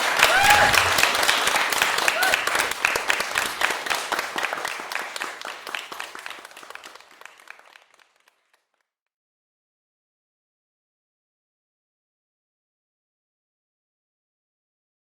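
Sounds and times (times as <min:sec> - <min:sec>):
audience applauding: 0:00.0 - 0:08.7.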